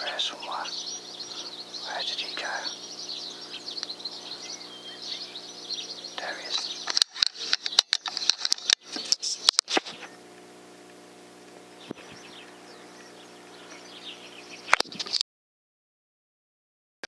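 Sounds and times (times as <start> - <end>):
low electrical hum: 0.0 - 15.2
small birds chirping: 0.0 - 15.2
sharp clicks and knocks: 6.8 - 10.0.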